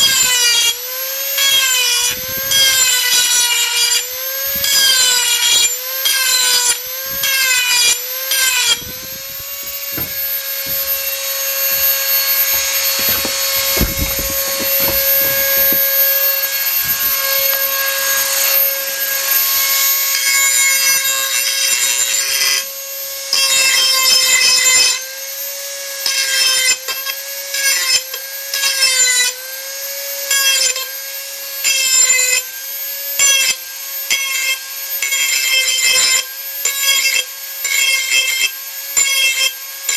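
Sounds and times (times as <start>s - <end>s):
grinding on metal: 0.0s - 22.3s
rotary tool motor whine: 0.0s - 25.8s.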